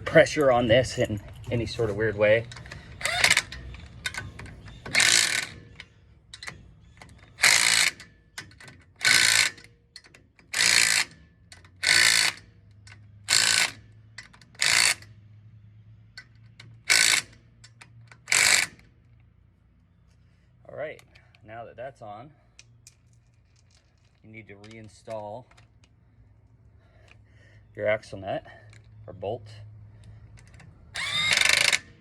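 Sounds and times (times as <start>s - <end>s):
socket ratchet clicking: 2.5s - 15.0s, 30.5s - 32.0s.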